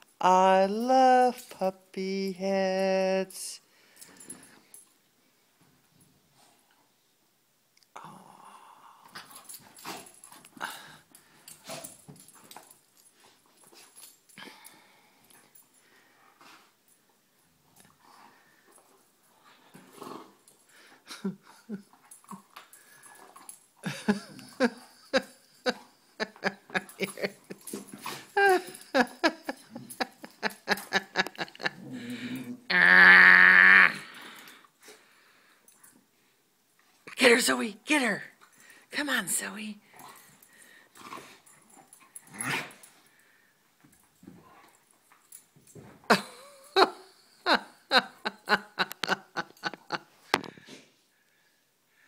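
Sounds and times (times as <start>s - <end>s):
puppies growling: 31.4s - 32.7s.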